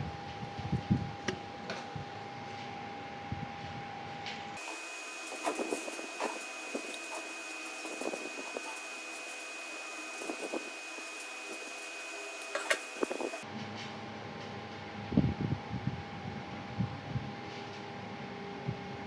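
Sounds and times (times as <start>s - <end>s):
steady hiss: 4.6s - 13.4s.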